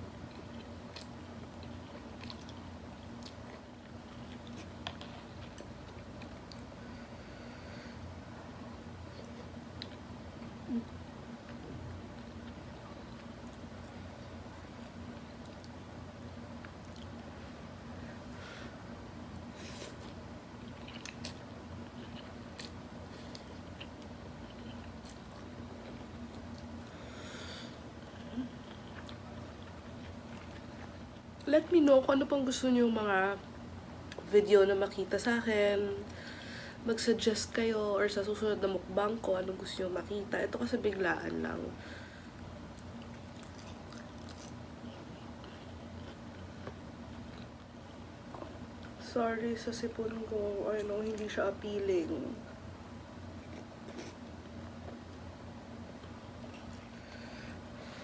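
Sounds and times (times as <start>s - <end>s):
faint steady hum: 0.0s - 58.0s
person chewing food: 0.3s - 6.7s, 9.1s - 17.3s, 19.3s - 27.4s, 28.0s - 31.3s, 42.4s - 48.9s, 53.3s - 55.2s, 55.9s - 58.0s
person breathing: 26.9s - 27.8s, 36.1s - 36.8s, 56.9s - 58.0s.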